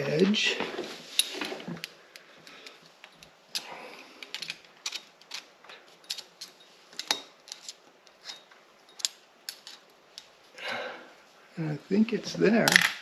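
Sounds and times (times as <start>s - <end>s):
small metal clicks and scrapes: 1.1s - 10.3s.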